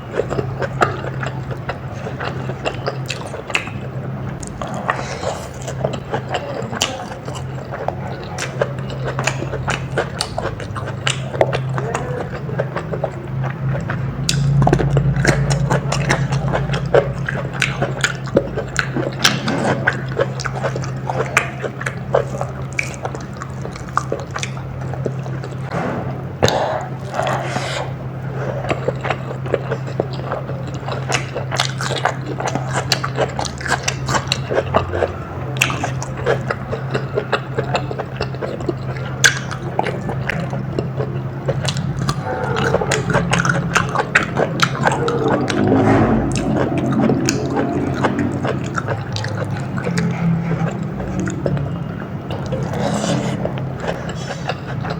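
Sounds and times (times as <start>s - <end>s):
wet chewing and smacking: 0.0s - 25.7s, 26.4s - 54.9s
steady low hum: 0.0s - 54.9s.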